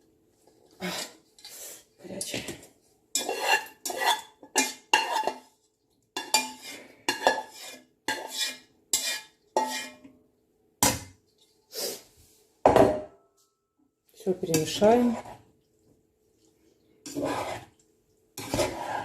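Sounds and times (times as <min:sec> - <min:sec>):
metal utensil scraping a pan: 0:03.1 - 0:05.6, 0:06.2 - 0:10.2, 0:14.4 - 0:15.5, 0:17.0 - 0:17.8, 0:18.4 - 0:19.0.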